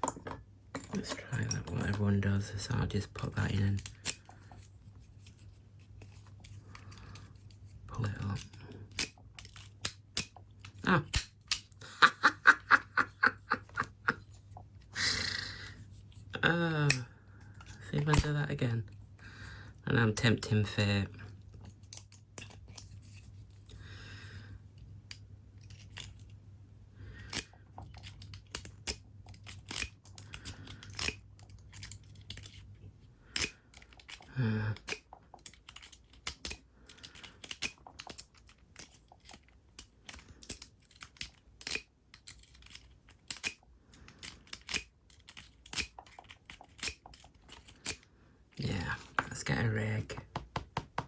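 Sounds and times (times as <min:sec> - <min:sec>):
lock pick clicking and scraping: 0:00.0 - 0:11.8, 0:15.6 - 0:19.0, 0:20.5 - 0:26.4, 0:27.1 - 0:32.7, 0:33.3 - 0:48.1
faint steady hum: 0:00.0 - 0:51.0.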